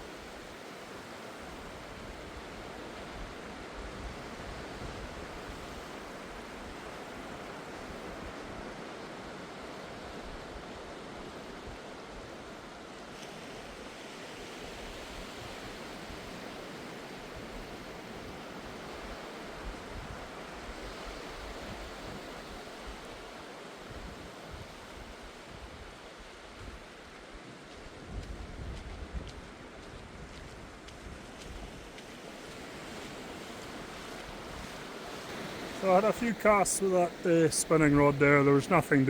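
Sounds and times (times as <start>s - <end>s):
surf breaking on a beach: 0.0s - 39.0s.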